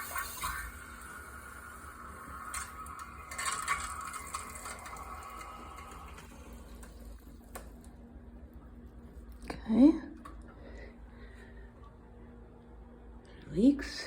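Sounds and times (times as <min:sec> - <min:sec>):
water rushing through pipes: 0:00.0 - 0:07.6.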